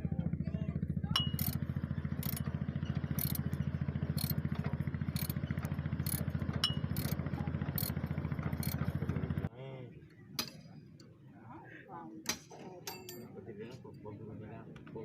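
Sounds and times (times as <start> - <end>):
diesel engine running: 0.0 - 9.5.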